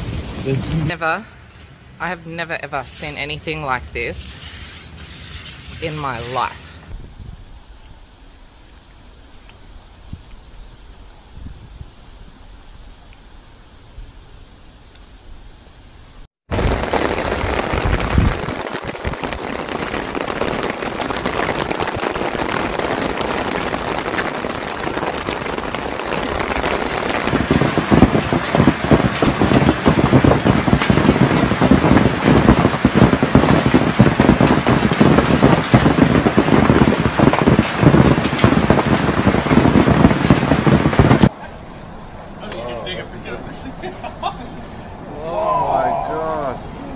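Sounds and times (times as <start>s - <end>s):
hail clattering on hard surfaces: 16.5s - 41.3s.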